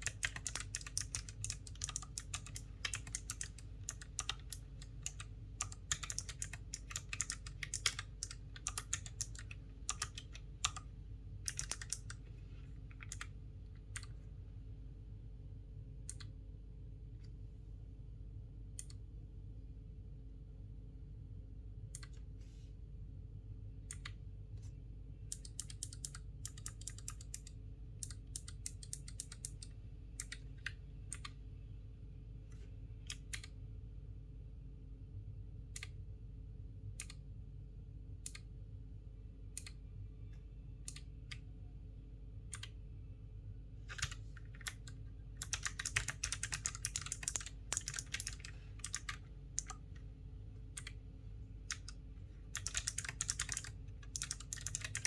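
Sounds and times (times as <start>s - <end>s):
clicky keyboard typing: 0.0s - 14.3s, 16.0s - 16.4s, 18.8s - 19.0s, 21.9s - 22.3s, 23.8s - 24.2s, 25.3s - 31.4s, 32.5s - 33.6s, 36.9s - 37.3s, 38.2s - 38.5s, 39.5s - 39.8s, 40.8s - 41.5s, 42.4s - 42.8s, 43.9s - 51.0s, 51.6s - 55.0s
steady low hum: 0.0s - 55.0s.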